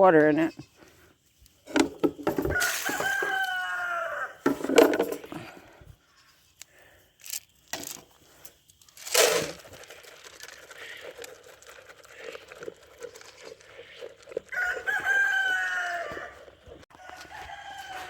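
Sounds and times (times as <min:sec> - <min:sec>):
rustling or thumping noises: 0:01.6 - 0:03.5, 0:04.4 - 0:05.6
rooster crowing: 0:02.5 - 0:04.4, 0:14.5 - 0:18.0.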